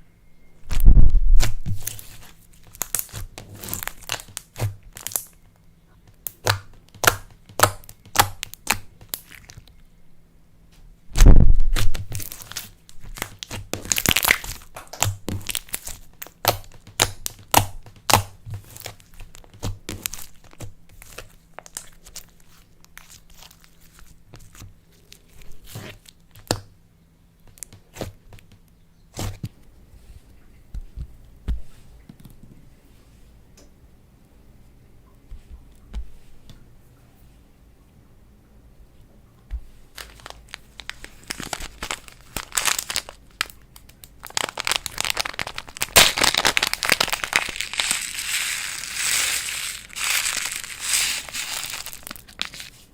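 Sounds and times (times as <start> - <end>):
slime crackling and popping: 0.7 - 5.4, 6.1 - 9.7, 11.2 - 26.7, 39.9 - 52.8.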